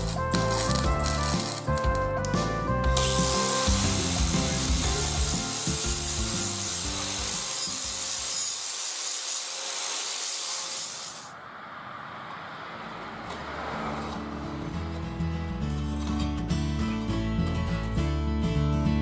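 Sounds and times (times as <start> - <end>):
abrasive tool hissing on metal: 3.0 - 11.3.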